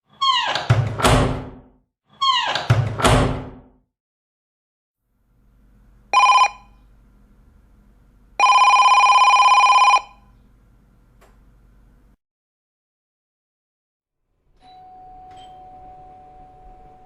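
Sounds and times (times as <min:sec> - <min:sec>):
telephone bell ringing: 0:06.2 - 0:06.8, 0:08.4 - 0:10.3.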